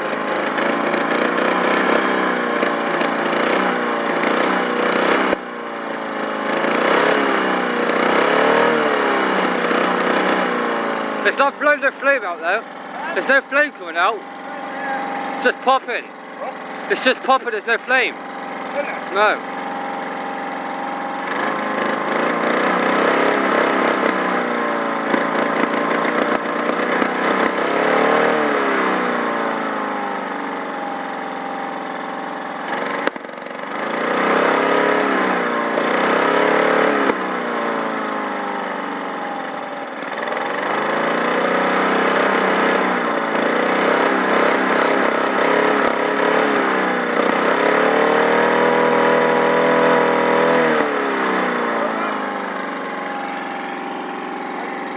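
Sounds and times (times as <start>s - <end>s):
lawn mower engine revving: 0.0s - 54.9s
exhaust backfire pops: 5.1s - 5.5s, 25.0s - 27.6s, 32.6s - 33.6s, 44.9s - 48.0s.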